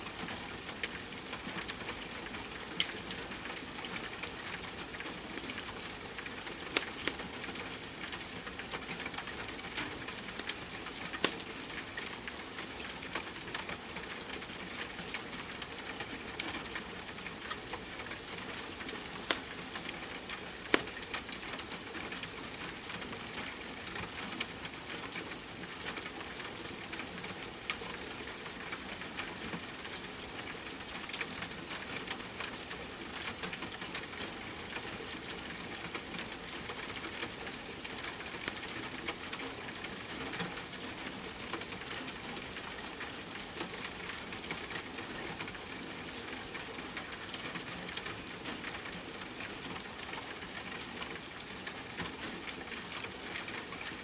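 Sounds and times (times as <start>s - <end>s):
steady rain hiss: 0.0s - 54.0s
crackling wood fire: 0.3s - 24.8s
sharp pops from fire: 19.3s - 19.5s, 20.7s - 20.9s.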